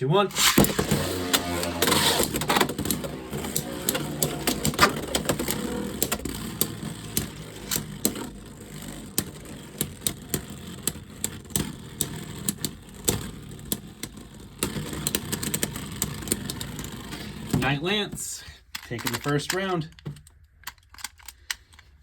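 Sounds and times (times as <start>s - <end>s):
spinning tops clacking: 0.3s - 17.7s
spinning tops whirring: 0.3s - 18.0s.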